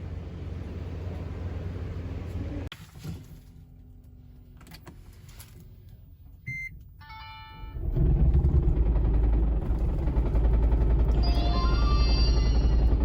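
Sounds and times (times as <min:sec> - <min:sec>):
engine rattling clatter: 0:07.8 - 0:13.0.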